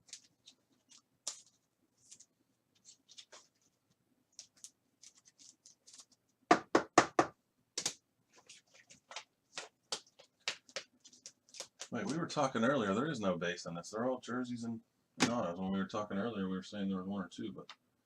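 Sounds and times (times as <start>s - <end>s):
trading cards clicking and tapping: 9.0s - 12.2s.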